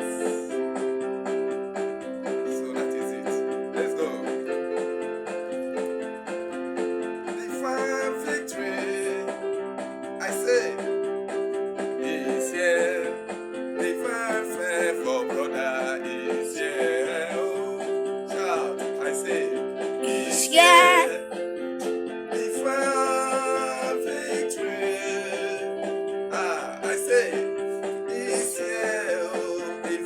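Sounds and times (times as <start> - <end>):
person singing with vibrato: 12.0 - 21.4, 22.4 - 30.0.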